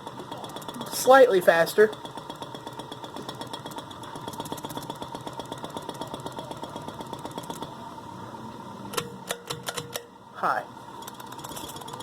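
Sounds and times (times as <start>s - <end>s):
rapid even ticking: 0.0s - 7.7s
ceiling fan motor humming: 0.0s - 12.0s.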